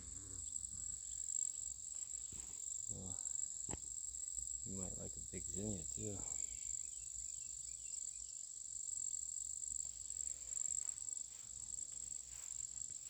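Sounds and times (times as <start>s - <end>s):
insects trilling: 0.0s - 13.0s.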